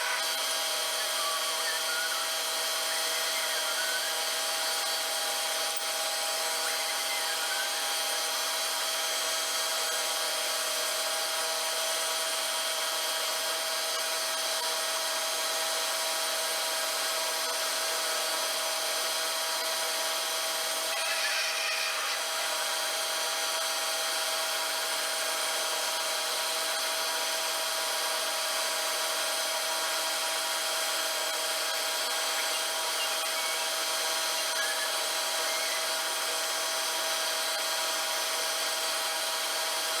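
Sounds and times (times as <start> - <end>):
metal cutting noise: 0.0 - 10.3, 20.2 - 24.6
lathe motor hum and whine: 0.0 - 40.0.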